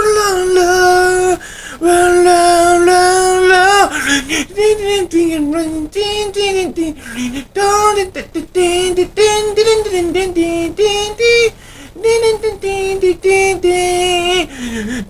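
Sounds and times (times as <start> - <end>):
man singing a cappella: 0.0 - 15.0.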